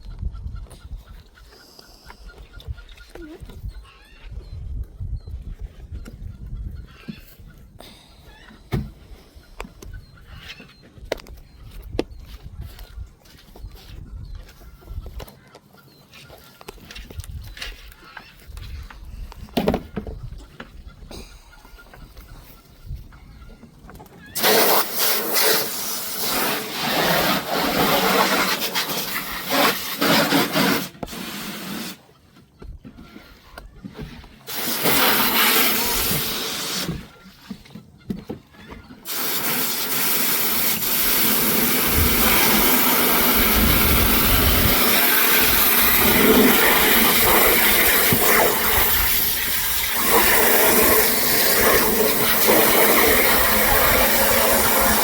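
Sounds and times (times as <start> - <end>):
water spraying: 24.4 - 32.0, 34.5 - 37.1, 39.0 - 55.0.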